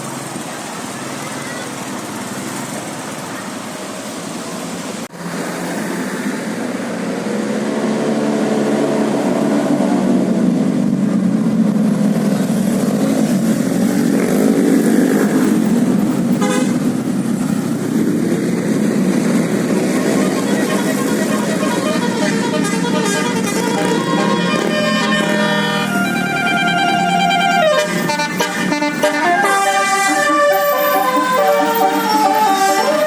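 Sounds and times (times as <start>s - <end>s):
road traffic noise: 0.0s - 33.0s
multi-tone bus horn playing a tune: 16.4s - 16.9s, 19.9s - 33.0s.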